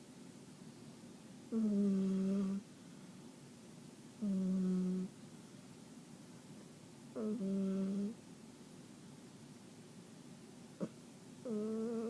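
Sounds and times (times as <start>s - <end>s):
cat snoring: 1.5s - 2.6s, 4.2s - 5.1s, 7.2s - 8.2s, 10.8s - 12.0s.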